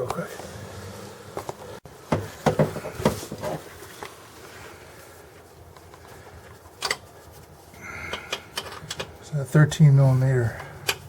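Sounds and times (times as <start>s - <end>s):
sharp knocks: 2.1s - 3.3s
hand tools clicking and clanking: 5.8s - 7.1s, 8.0s - 9.2s.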